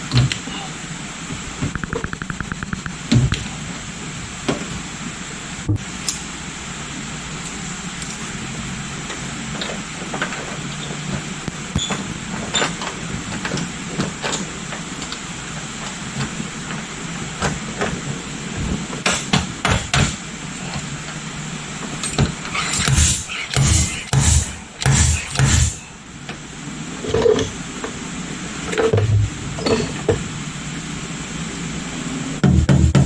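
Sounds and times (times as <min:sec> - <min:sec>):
tools tapping car body panel: 0:19.0 - 0:20.3, 0:22.0 - 0:25.9
steady hum: 0:21.2 - 0:26.7.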